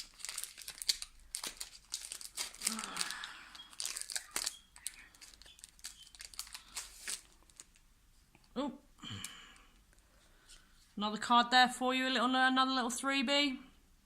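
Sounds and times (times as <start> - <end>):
foil wrapper crinkling and tearing: 0.0 - 7.8.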